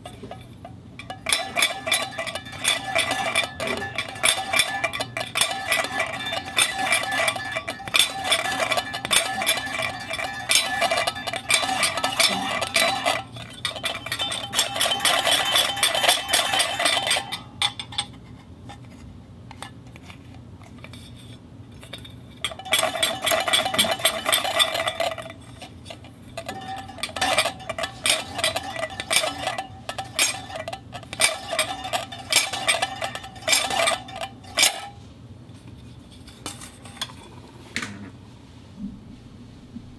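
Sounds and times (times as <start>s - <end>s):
metal dog bowl rattling: 0.0s - 18.2s, 21.8s - 35.0s.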